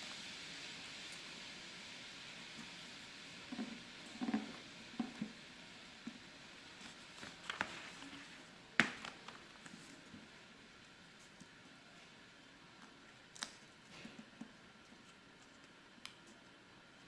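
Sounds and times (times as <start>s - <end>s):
faint hiss: 0.0s - 17.0s
paper crinkling and tapping: 6.8s - 10.3s.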